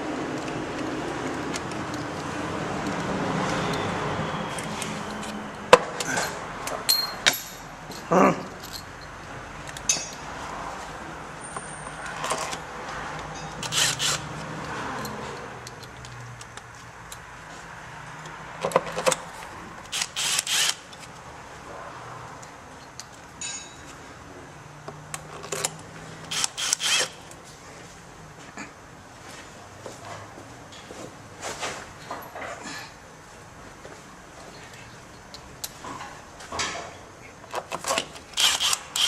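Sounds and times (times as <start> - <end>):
workshop background noise: 0.1 - 39.0
metallic clinks of hand tools: 6.2 - 9.2.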